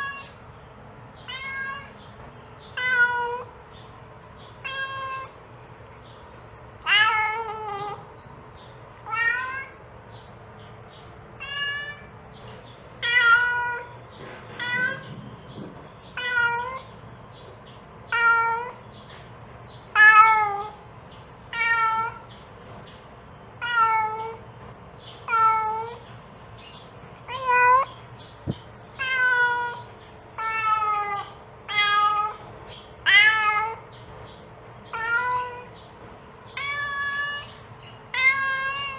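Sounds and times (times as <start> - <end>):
cat meowing: 0.0 - 0.4, 1.2 - 2.1, 2.7 - 3.6, 4.6 - 5.4, 6.8 - 8.1, 9.0 - 9.8, 11.4 - 12.2, 13.0 - 14.0, 14.6 - 15.2, 16.1 - 16.9, 18.1 - 18.8, 19.9 - 20.8, 21.5 - 22.3, 23.6 - 24.4, 25.2 - 26.0, 27.3 - 27.9, 28.9 - 33.9, 34.9 - 35.8, 36.5 - 38.9.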